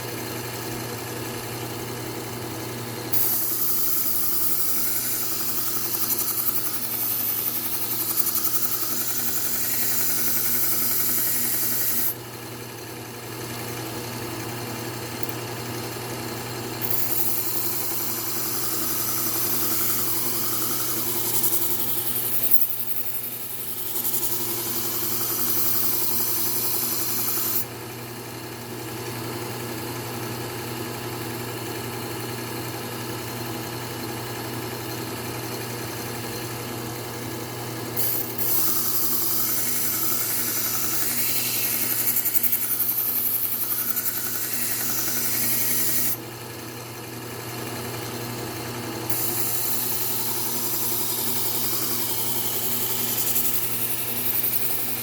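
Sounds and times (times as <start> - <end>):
sharpener motor hum: 2.2 - 12.6, 13.2 - 27.8, 35.6 - 46.9, 47.8 - 55.0
blade grinding on belt: 3.1 - 12.2, 16.8 - 27.7, 37.9 - 46.2, 49.1 - 55.0.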